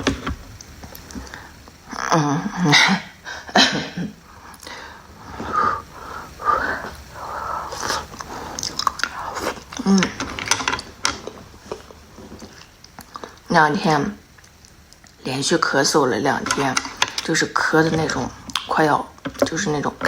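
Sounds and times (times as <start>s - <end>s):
person chewing food: 4.4s - 13.5s.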